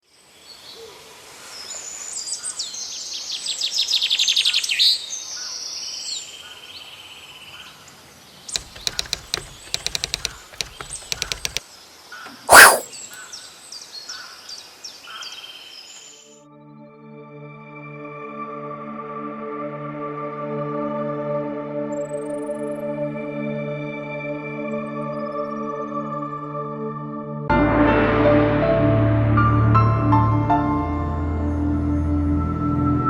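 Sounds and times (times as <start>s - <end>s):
sharp clicks: 8.6s - 11.6s, 12.5s - 13.1s.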